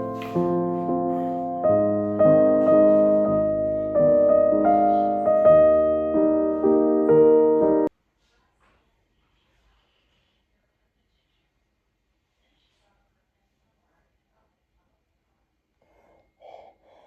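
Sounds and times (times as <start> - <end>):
slow piano chords: 0.0 - 7.9.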